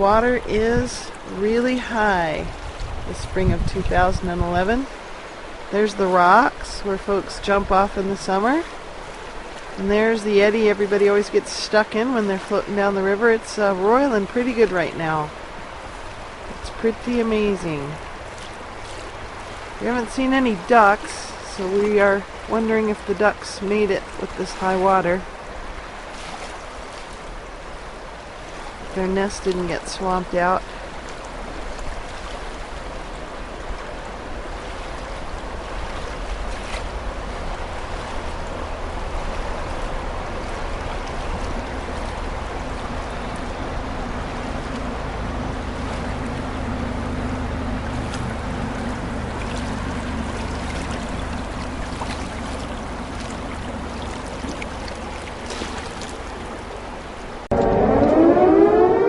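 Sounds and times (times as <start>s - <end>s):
river rushing: 0.0s - 59.0s
wind rumble on microphone: 0.0s - 59.0s
siren rising in pitch: 57.5s - 59.0s.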